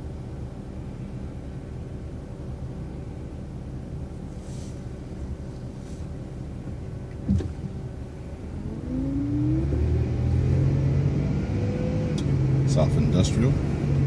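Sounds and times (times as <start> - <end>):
city bus engine drone: 0.0 - 14.0
rising whine: 8.3 - 12.7.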